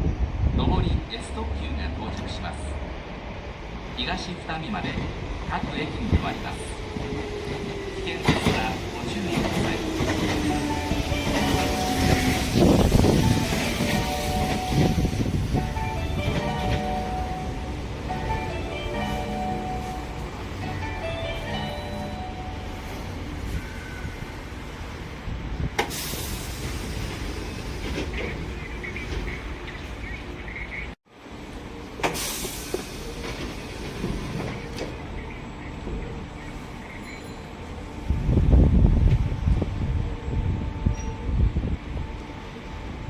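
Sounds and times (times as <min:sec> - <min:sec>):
train wheels rolling on rails: 0:04.8 - 0:30.8, 0:31.4 - 0:40.0
air hissing burst: 0:25.8 - 0:27.6, 0:32.0 - 0:34.0.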